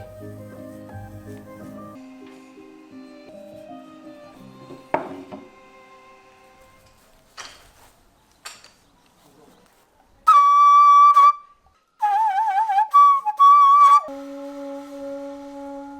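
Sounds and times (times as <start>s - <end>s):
faint knocks: 4.6s - 5.6s
bamboo flute playing: 10.2s - 15.9s.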